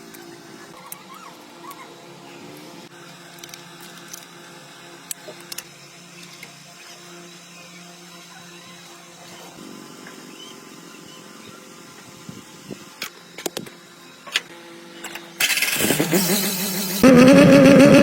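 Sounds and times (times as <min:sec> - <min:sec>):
starter cranking engine: 0:15.4 - 0:18.0.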